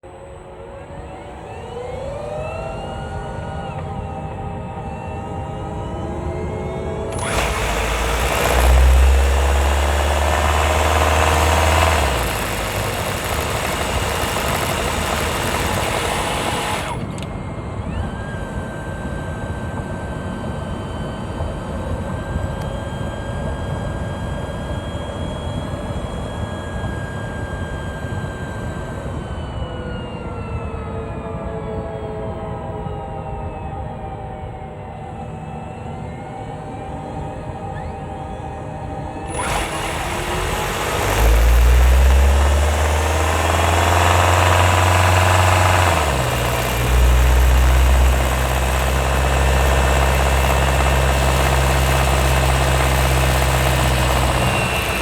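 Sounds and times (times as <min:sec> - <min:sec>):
steady high whine: 0:07.1 - 0:17.3, 0:39.3 - 0:55.0
car engine running under load: 0:07.1 - 0:18.7, 0:39.3 - 0:55.0.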